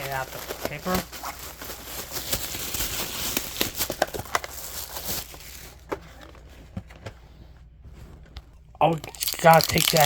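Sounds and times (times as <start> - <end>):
paper wrap rustling: 0.0 - 6.7, 9.0 - 10.0.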